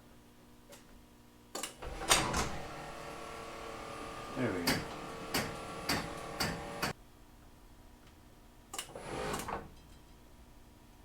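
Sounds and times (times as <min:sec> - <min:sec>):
garage door rattle: 0:01.8 - 0:03.1
garage door opener motor running: 0:01.8 - 0:07.0, 0:08.8 - 0:09.6.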